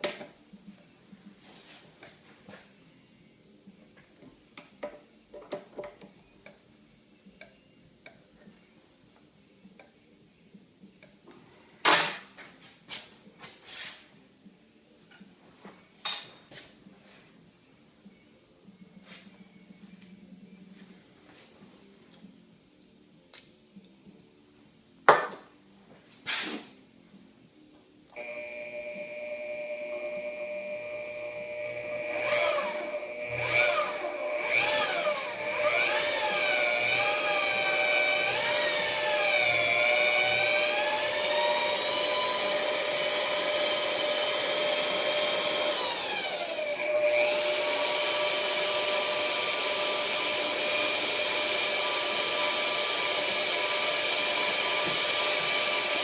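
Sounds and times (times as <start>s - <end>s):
drill press motor whining: 28.2s - 56.0s.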